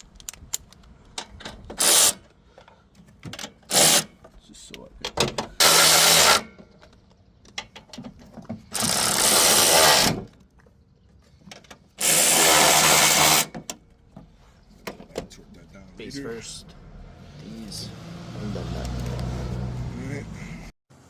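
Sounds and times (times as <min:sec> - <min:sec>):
handling clicks and knocks: 0:00.0 - 0:05.6, 0:06.5 - 0:08.8, 0:10.2 - 0:12.0, 0:13.5 - 0:15.4
power tool running: 0:05.6 - 0:06.4, 0:08.8 - 0:10.2, 0:12.0 - 0:13.5.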